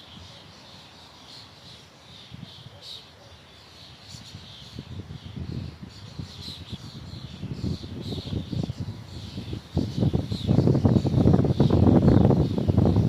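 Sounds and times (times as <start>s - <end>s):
small songbirds chirping: 0.0s - 13.0s
wind rumbling in gusts: 4.0s - 13.0s.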